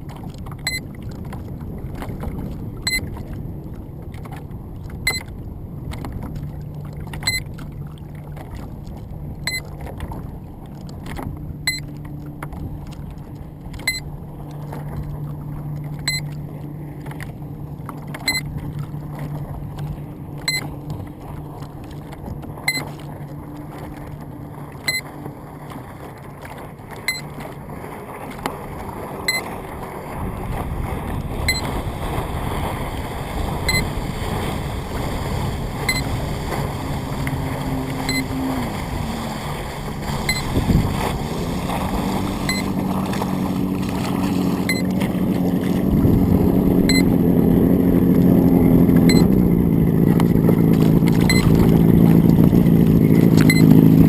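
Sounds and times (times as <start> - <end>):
wind rush: 30.1 - 48.8.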